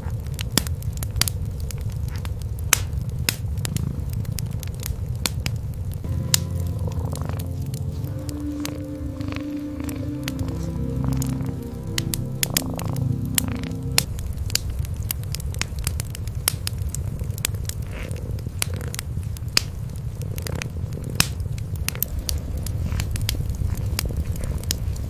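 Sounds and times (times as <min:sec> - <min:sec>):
wood fire crackling and popping: 0:00.0 - 0:25.0
cats purring: 0:03.5 - 0:05.3, 0:06.6 - 0:13.6, 0:16.6 - 0:25.0.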